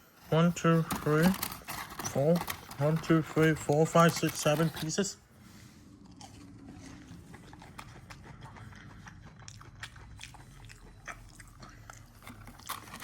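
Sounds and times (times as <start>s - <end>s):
person chewing crunchy food: 1.0s - 13.0s.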